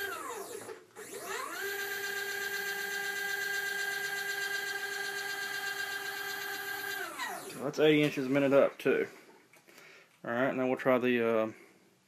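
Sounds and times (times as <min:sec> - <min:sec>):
motor whine: 0:00.0 - 0:07.8.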